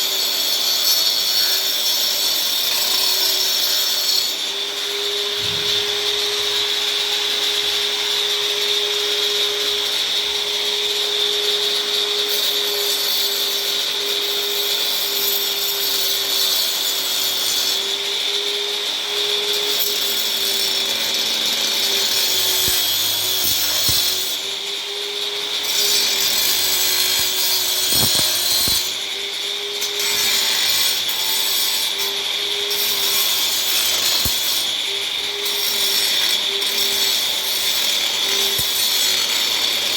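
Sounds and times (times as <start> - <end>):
angle grinder grinding: 0.0 - 39.9.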